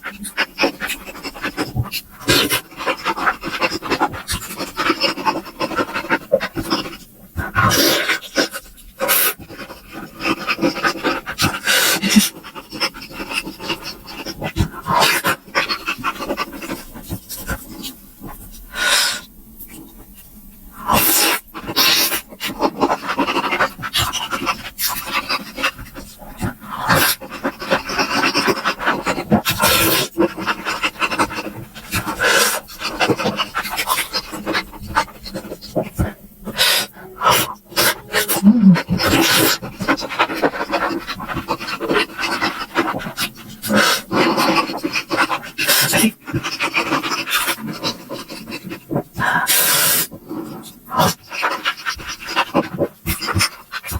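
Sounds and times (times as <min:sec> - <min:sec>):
breathy mouth noises: 0:35.8 - 0:39.6.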